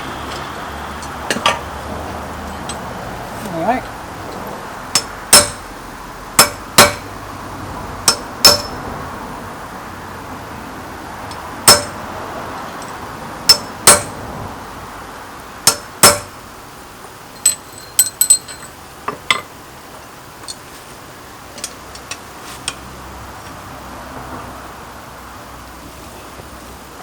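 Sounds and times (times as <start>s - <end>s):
steady background noise: 0.0s - 27.0s
hammer striking steel on anvil: 5.0s - 5.7s, 6.4s - 7.1s, 8.0s - 8.8s, 11.6s - 12.0s, 13.5s - 14.2s, 15.7s - 16.3s.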